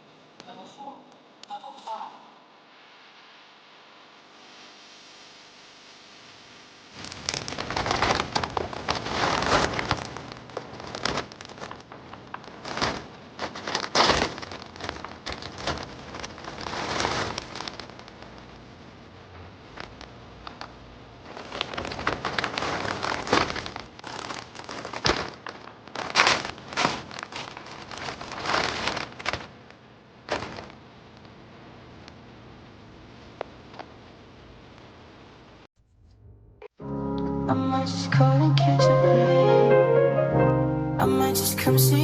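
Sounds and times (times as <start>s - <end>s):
crinkling and rustling: 7.0s - 32.2s.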